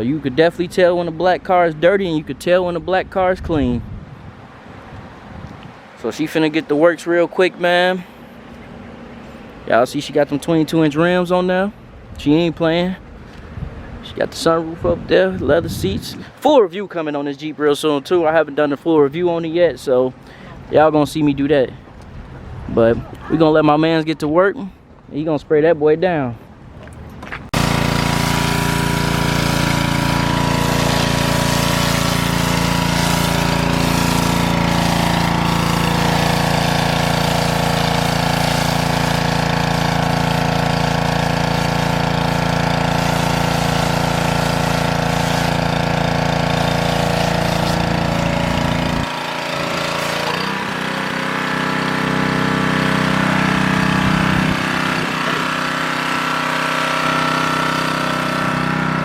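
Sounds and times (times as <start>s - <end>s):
water spray hissing: 27.6s - 50.4s
pressure washer engine running: 27.6s - 59.0s.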